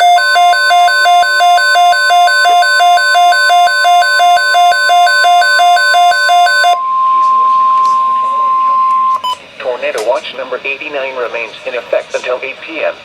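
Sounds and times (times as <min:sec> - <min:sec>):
steady warning tone: 0:00.0 - 0:09.4
two-tone alarm beeping: 0:00.0 - 0:09.4.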